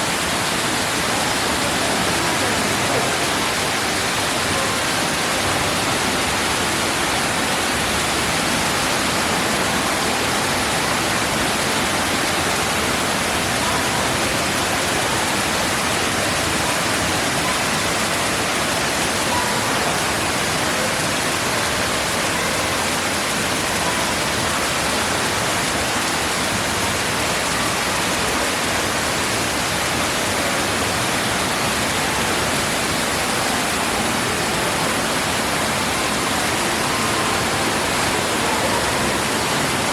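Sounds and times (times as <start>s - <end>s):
water falling into a pool: 0.0s - 39.9s.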